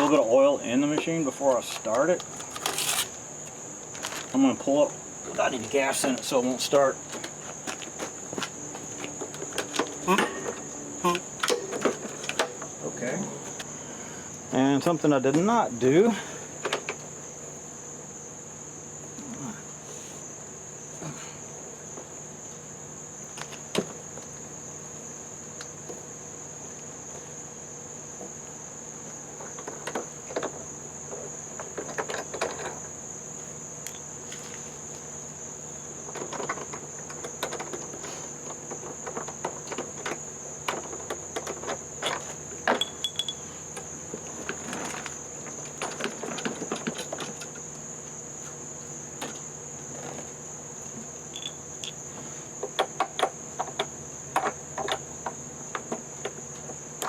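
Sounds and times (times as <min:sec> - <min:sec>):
crickets chirping: 0:00.0 - 0:57.0
handling clicks and knocks: 0:07.1 - 0:13.7.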